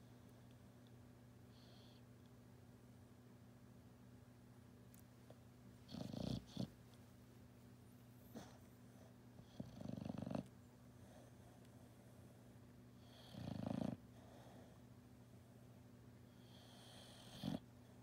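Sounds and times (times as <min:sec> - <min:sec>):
dog snoring: 0:05.8 - 0:06.8, 0:08.3 - 0:11.3, 0:13.0 - 0:14.8, 0:16.3 - 0:17.7.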